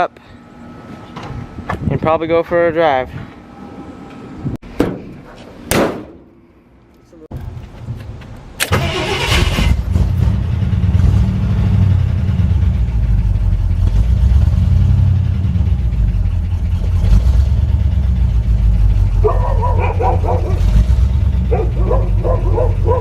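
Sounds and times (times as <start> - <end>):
truck engine idling: 7.3 - 23.0
dog barking: 19.2 - 20.8, 21.4 - 23.0.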